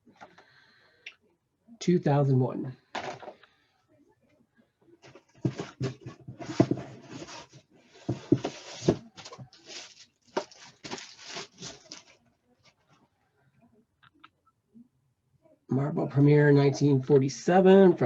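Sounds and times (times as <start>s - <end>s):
rustling and scuffing: 5.0s - 12.8s.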